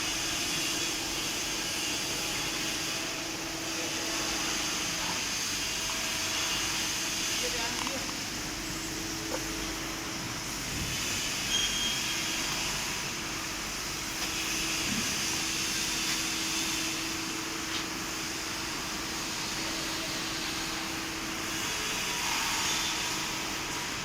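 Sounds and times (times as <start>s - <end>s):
hydraulic machine hum and hiss: 0.0s - 24.0s.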